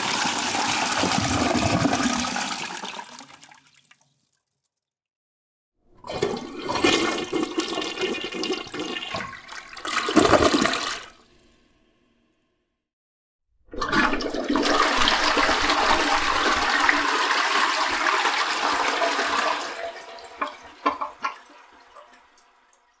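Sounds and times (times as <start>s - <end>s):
water gurgles: 0.0s - 3.4s
toilet flushing: 0.0s - 3.8s, 6.0s - 11.4s, 13.7s - 23.0s.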